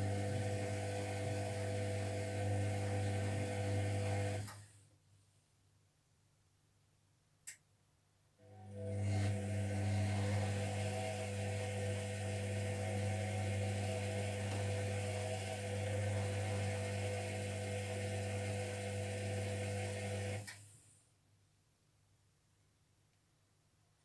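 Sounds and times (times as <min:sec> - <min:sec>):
washing machine motor hum: 0:00.0 - 0:04.5, 0:08.6 - 0:20.5.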